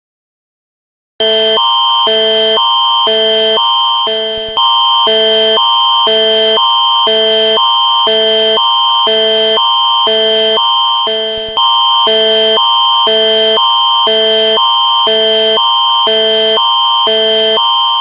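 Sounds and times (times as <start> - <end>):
alternating emergency alert tones: 1.2 - 18.0
high tone held: 1.2 - 18.0.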